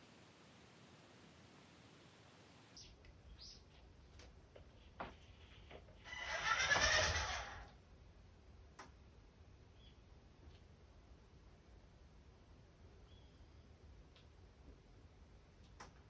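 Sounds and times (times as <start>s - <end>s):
wheels rumbling on floor: 4.6s - 7.7s
toy car motor whirring: 6.1s - 7.7s.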